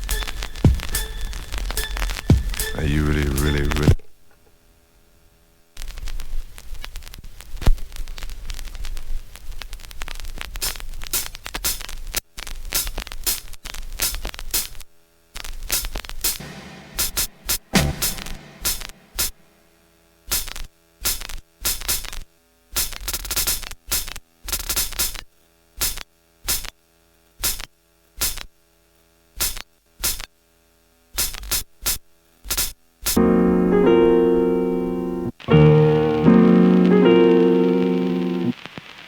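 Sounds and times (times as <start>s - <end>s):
sustained keyboard chord: 16.4s - 19.3s, 33.2s - 38.6s
sampler playing short hits: 16.4s - 19.4s, 33.2s - 38.5s.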